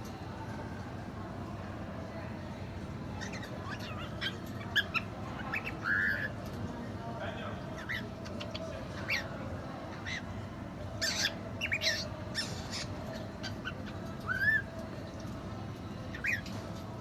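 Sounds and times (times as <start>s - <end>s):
cockatiel chirps and squawks: 3.2s - 6.3s, 7.8s - 9.3s, 11.0s - 14.7s, 16.1s - 16.5s.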